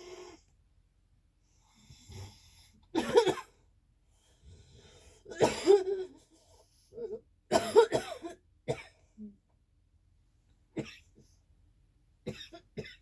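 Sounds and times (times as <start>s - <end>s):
person coughing: 3.0s - 3.5s, 5.3s - 6.2s, 7.0s - 8.9s, 12.3s - 13.0s.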